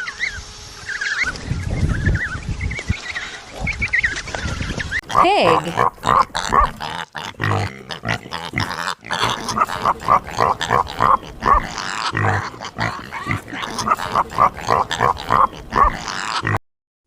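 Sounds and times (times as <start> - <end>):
pig grunting: 5.0 - 16.6.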